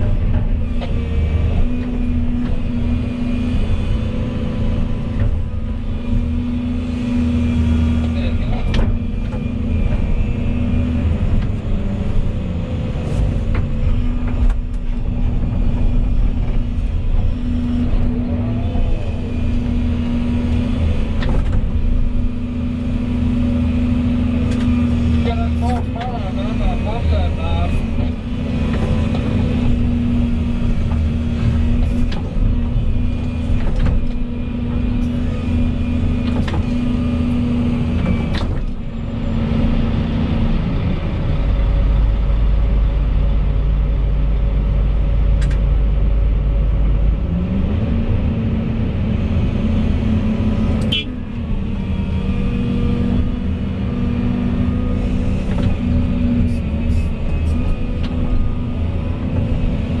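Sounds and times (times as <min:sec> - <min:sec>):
excavator diesel engine: 0:00.0 - 1:00.0
heavy low rumble: 0:00.0 - 1:00.0.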